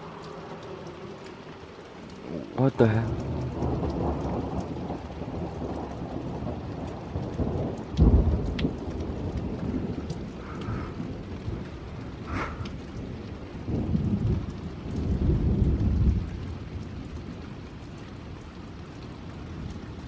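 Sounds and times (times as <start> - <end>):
steady rain falling: 0.0 - 20.0
low thunder rumbling: 1.9 - 20.0
thunder clap: 2.8 - 17.4.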